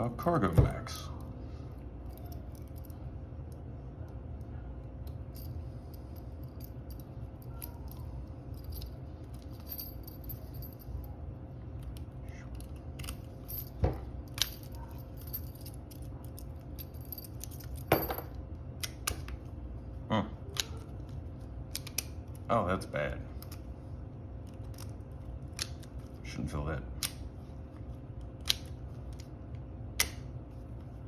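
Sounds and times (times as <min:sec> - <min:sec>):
steady low hum: 0:00.0 - 0:31.0
padlock and key clicking: 0:11.8 - 0:14.9, 0:30.0 - 0:30.3.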